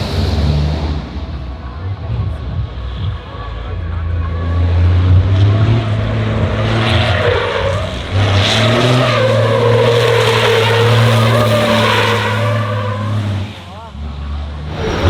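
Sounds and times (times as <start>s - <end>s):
tyres squealing in a skid: 5.5s - 13.8s, 14.7s - 15.0s.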